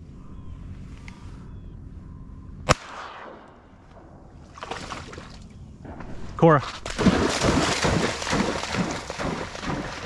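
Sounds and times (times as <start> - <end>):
low steady rumble: 0.0 - 10.0
shotgun shot: 2.6 - 4.1.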